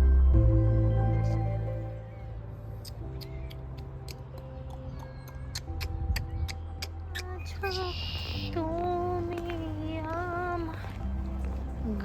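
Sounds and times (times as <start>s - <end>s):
steady low bass: 0.0s - 4.0s.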